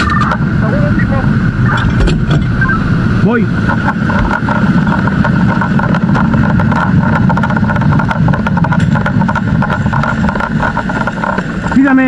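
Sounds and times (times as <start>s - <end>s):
fire engine running: 0.0s - 12.0s
clicks and knocks: 3.7s - 11.8s.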